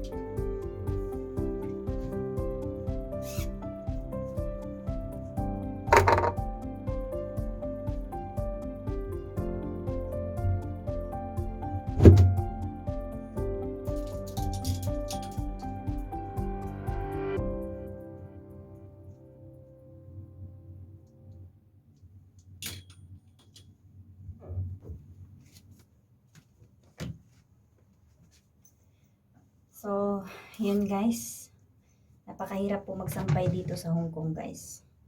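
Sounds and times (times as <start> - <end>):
background music sustained notes: 0.0 - 21.5
hangers clicking and knocking: 5.9 - 6.4, 14.0 - 15.8, 22.6 - 23.8
loud thump: 12.0 - 12.4
clothes rustling: 24.8 - 28.9.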